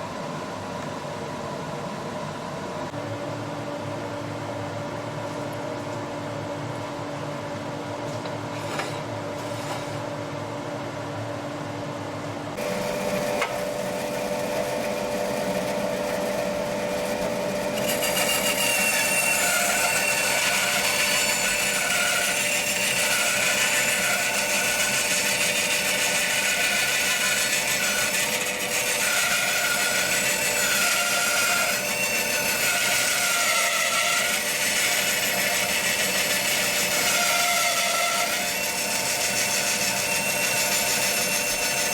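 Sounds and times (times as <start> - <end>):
bandsaw cutting wood: 12.6 - 41.9.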